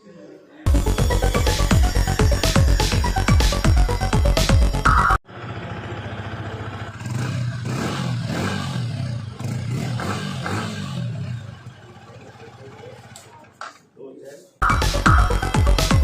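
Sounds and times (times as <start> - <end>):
electronic music with steady beat: 0.7 - 5.2, 14.6 - 16.0
motorcycle exhaust revving: 5.0 - 12.6.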